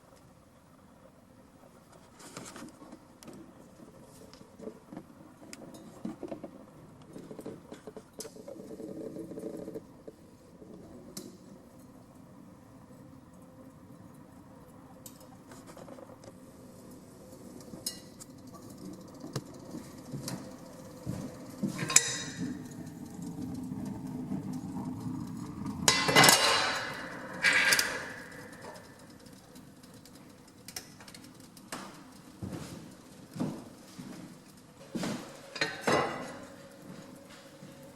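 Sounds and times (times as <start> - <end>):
metallic clinks and knocks: 19.8 - 22.8, 25.9 - 31.3, 35.4 - 36.6
loud rattling scraping bursts: 25.0 - 32.4.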